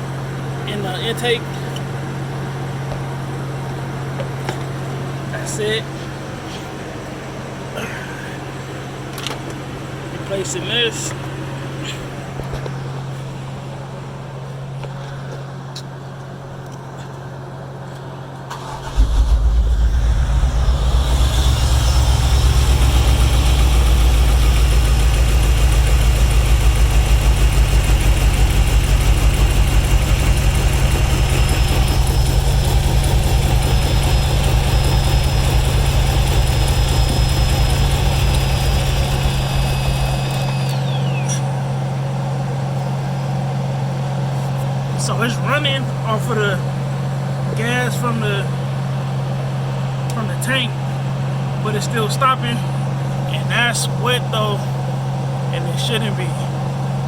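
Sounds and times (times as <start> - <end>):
car engine starting and running: 18.4 - 57.0.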